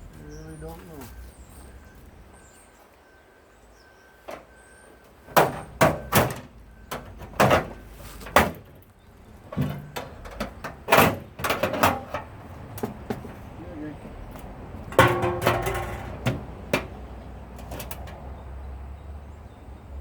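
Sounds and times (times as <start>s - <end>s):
pry bar knocks and bangs on metal: 5.3s - 8.7s, 14.9s - 17.0s.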